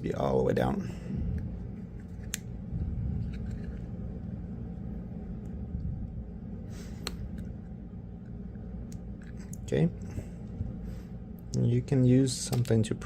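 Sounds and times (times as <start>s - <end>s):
low rumble: 0.8s - 12.0s.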